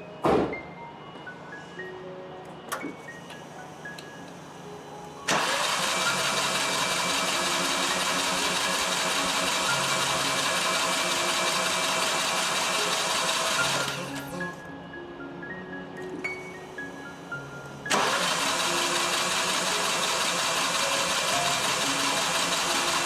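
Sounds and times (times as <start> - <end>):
background music: 0.0 - 23.0
car engine starting and running: 5.3 - 14.2, 17.9 - 23.0.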